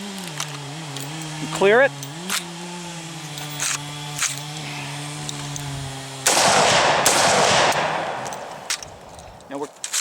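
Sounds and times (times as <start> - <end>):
rifle shot: 6.2 - 8.6.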